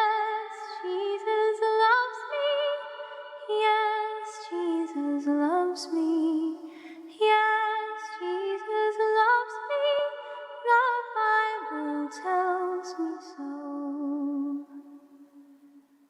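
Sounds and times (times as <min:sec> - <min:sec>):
a cappella vocal harmony: 0:00.0 - 0:15.8.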